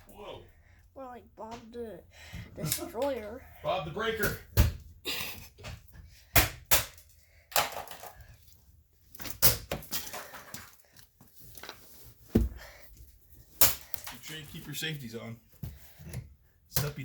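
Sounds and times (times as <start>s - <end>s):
plastic being struck and broken: 6.3s - 8.2s.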